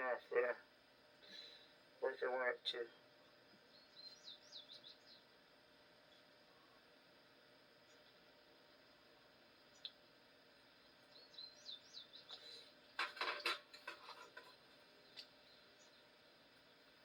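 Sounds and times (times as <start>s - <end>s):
small bird chirping: 3.2s - 5.4s, 9.6s - 10.0s, 10.7s - 12.7s, 14.2s - 16.9s.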